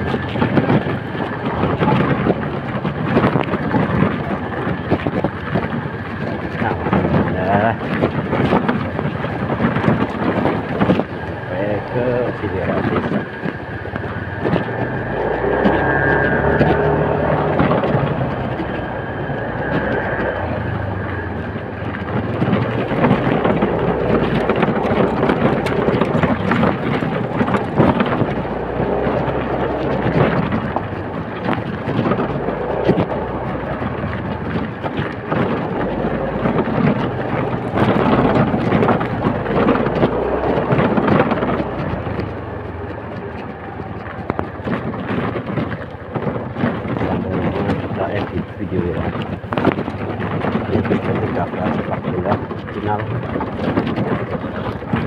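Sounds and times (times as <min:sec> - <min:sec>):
motorcycle engine hum: 0:00.0 - 0:55.0
wind buffeting microphone: 0:00.0 - 0:55.0.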